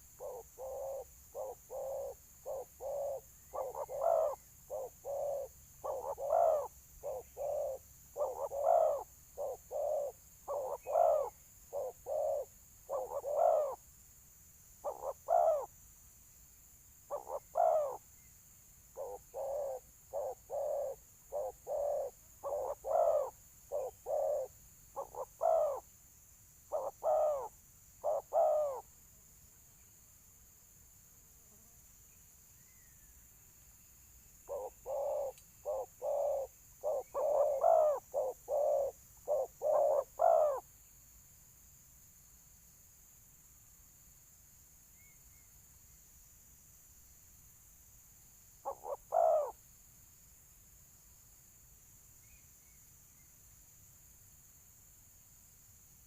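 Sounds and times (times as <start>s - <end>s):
doves cooing: 0.0s - 13.8s, 14.8s - 15.7s, 17.1s - 18.0s, 19.0s - 25.8s, 26.7s - 28.8s, 34.5s - 40.6s, 48.6s - 49.6s.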